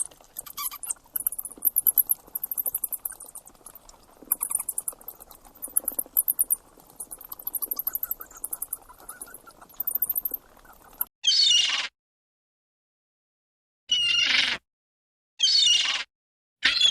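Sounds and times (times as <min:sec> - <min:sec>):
animal high-pitched chirping: 0:00.0 - 0:11.8.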